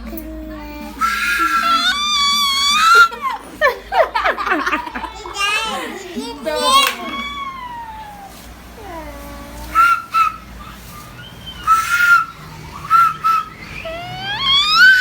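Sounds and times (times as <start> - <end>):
sliding howl-like tones: 0.8 - 15.0
breathy flute-like whistle notes: 9.7 - 15.0.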